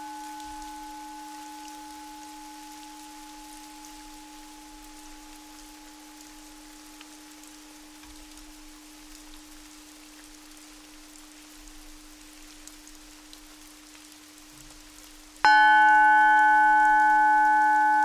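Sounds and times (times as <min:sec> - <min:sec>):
singing bowl ringing: 0:00.0 - 0:07.3, 0:15.5 - 0:18.0.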